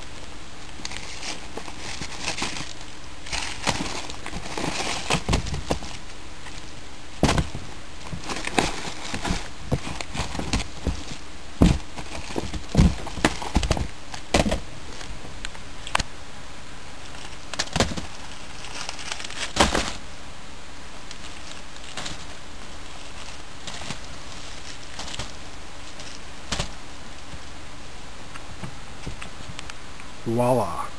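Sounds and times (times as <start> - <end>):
steady hiss: 0.0 - 30.9
packages knocking and rustling: 0.7 - 15.3, 17.1 - 20.0, 21.1 - 27.5.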